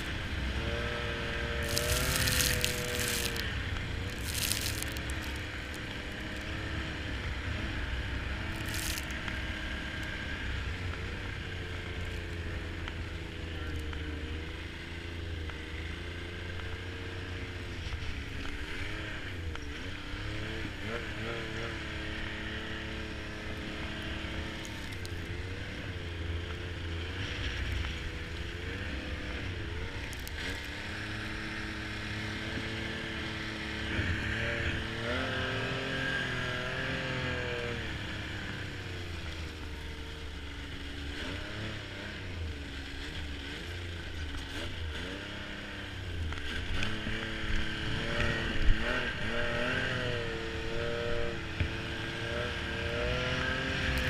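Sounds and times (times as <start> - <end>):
snowmobile engine revving: 0.0 - 54.0.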